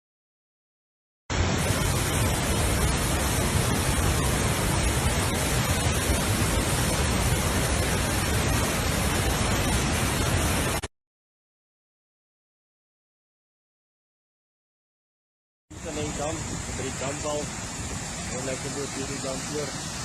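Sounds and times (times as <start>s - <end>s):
floodwater pouring over dam: 1.3s - 10.9s, 15.8s - 20.0s.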